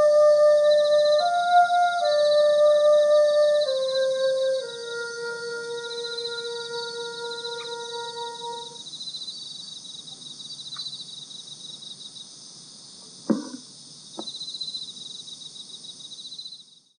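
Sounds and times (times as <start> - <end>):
crickets chirping: 0.0 - 17.0
faint ticks: 10.1 - 11.0
sharp knock: 13.3 - 13.6, 14.2 - 14.4.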